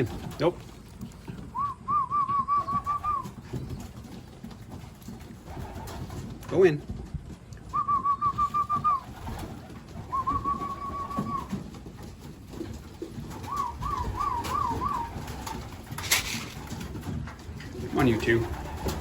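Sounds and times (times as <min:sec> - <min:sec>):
pigeons cooing: 0:00.0 - 0:06.4, 0:07.7 - 0:19.0
pigeons warbling calls: 0:00.0 - 0:06.7, 0:07.6 - 0:19.0
sharp clatter: 0:13.4 - 0:17.8.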